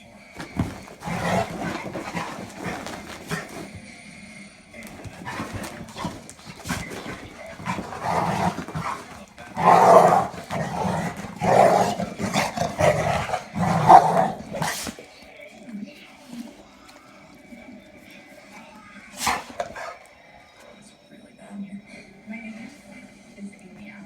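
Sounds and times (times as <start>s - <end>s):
dogs growling: 0.0s - 15.5s, 16.2s - 20.9s
dogs barking: 0.4s - 3.8s, 4.8s - 15.2s, 19.1s - 20.8s.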